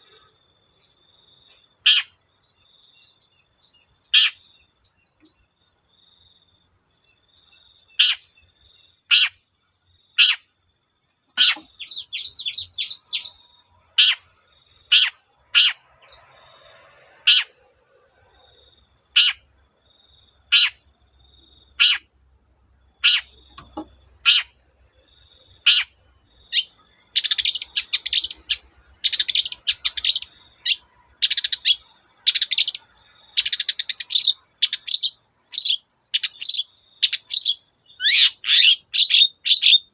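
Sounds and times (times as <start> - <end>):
bird calling sharp notes: 11.4 - 13.4
bird rapid chattering: 11.4 - 13.4, 23.0 - 24.6, 25.6 - 39.8.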